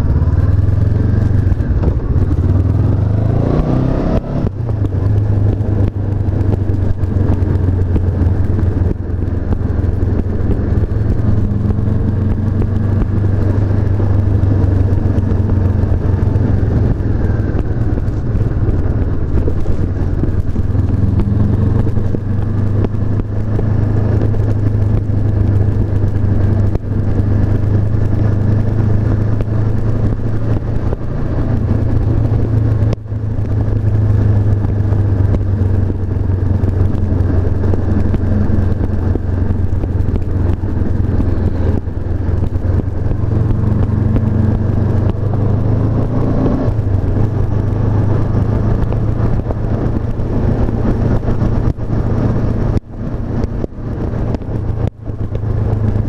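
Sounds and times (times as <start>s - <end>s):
motorcycle engine running: 0.0s - 56.0s.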